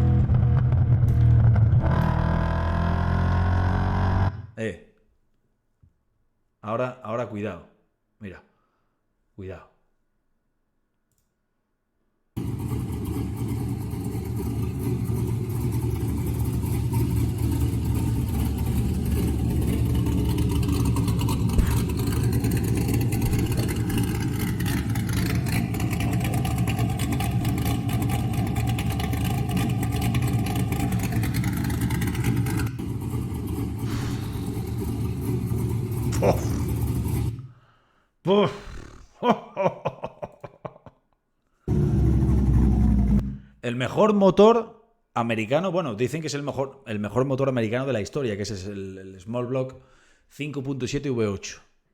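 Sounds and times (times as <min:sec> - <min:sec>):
car engine running: 0:12.4 - 0:37.4, 0:41.7 - 0:43.4.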